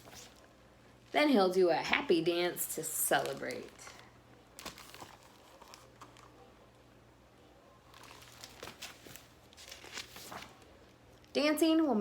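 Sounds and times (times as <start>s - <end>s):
page turning: 0.0s - 0.4s, 4.6s - 6.3s, 7.9s - 10.7s.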